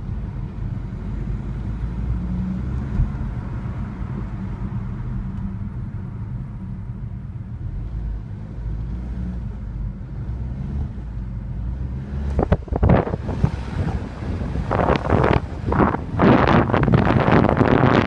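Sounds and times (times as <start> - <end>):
car engine droning: 0.0 - 18.0
rushing noise gusts: 12.4 - 18.0.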